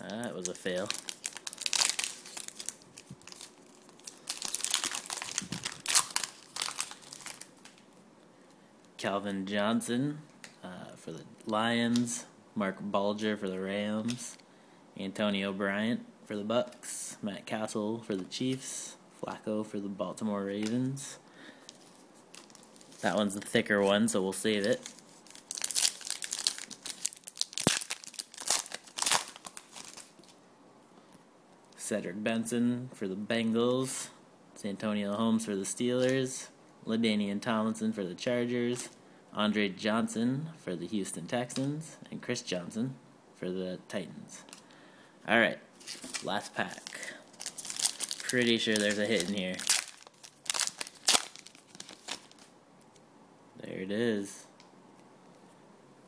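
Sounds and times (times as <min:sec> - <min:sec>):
foil wrapper tearing and crinkling: 0:00.4 - 0:07.8, 0:22.3 - 0:23.1, 0:24.8 - 0:30.2, 0:45.8 - 0:52.5.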